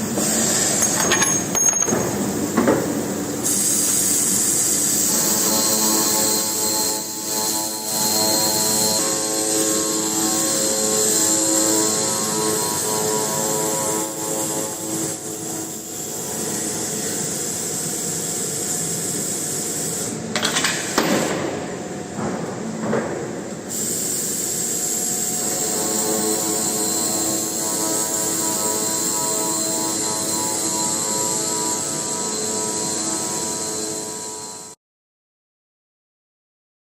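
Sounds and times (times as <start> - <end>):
metal circular saw machine whining: 3.4 - 19.2, 24.3 - 34.8
rough sawing noise: 3.5 - 17.5, 25.0 - 34.7.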